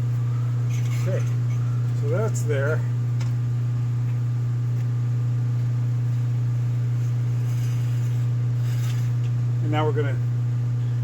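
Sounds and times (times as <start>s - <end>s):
steady low machine hum: 0.0s - 11.0s.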